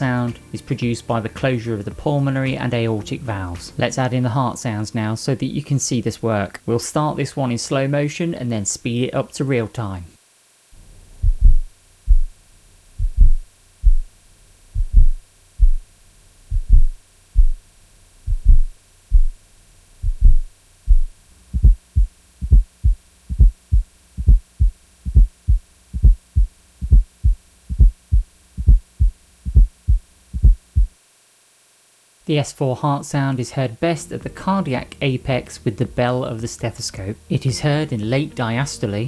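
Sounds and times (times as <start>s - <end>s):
heartbeat low thuds: 10.8s - 31.0s.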